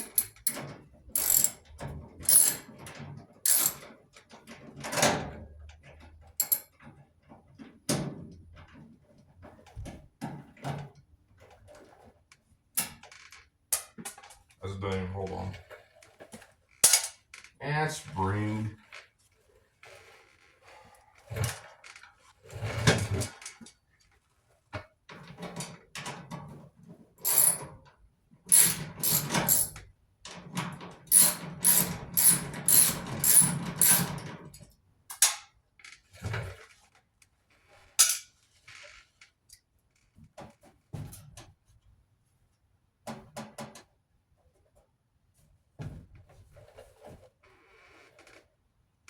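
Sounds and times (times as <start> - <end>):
hand tools clanking on sheet metal: 0.0 - 1.6, 2.2 - 2.7, 3.5 - 3.8, 27.2 - 27.7, 28.5 - 29.8, 31.1 - 34.2.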